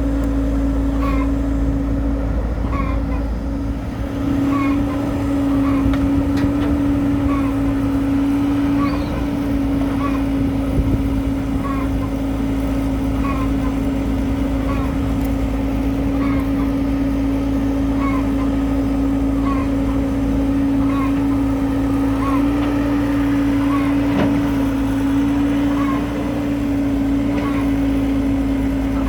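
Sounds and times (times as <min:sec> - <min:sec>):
excavator engine running: 0:00.0 - 0:29.0.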